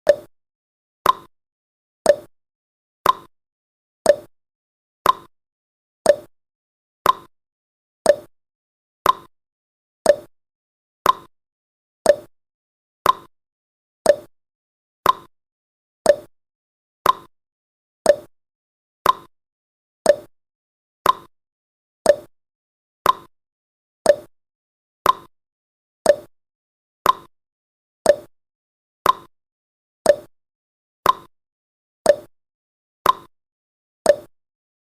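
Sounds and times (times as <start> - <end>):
timer ticking: 0.0 - 0.3, 1.0 - 1.3, 2.1 - 2.3, 3.0 - 3.3, 4.1 - 4.3, 5.0 - 5.3, 6.1 - 6.3, 7.0 - 7.3, 8.1 - 8.3, 9.0 - 9.3, 10.0 - 10.3, 11.0 - 11.3, 12.0 - 12.3, 13.0 - 13.3, 14.0 - 14.3, 15.0 - 15.3, 16.1 - 16.3, 17.0 - 17.3, 18.1 - 18.3, 19.0 - 19.3, 20.1 - 20.3, 21.0 - 21.3, 22.1 - 22.3, 23.0 - 23.3, 24.1 - 24.3, 25.0 - 25.3, 26.0 - 26.3, 27.0 - 27.3, 28.1 - 28.3, 29.0 - 29.3, 30.1 - 30.3, 31.0 - 31.3, 32.1 - 32.3, 33.0 - 33.3, 34.1 - 34.3.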